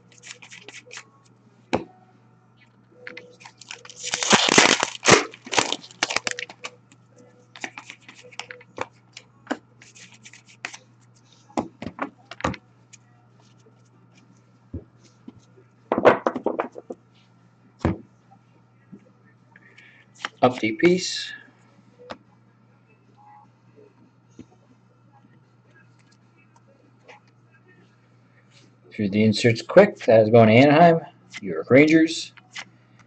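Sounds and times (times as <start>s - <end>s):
cards clicking and rustling: 0.1s - 1.1s, 3.0s - 6.7s, 7.5s - 10.8s
wrappers being torn open: 0.1s - 1.1s, 3.1s - 6.8s, 7.5s - 9.2s.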